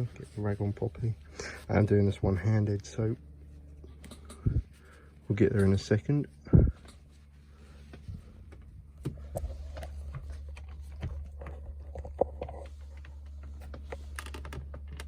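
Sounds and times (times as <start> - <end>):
steady low hum: 0.0 - 15.0
light clicks and knocks of grips: 7.8 - 15.0.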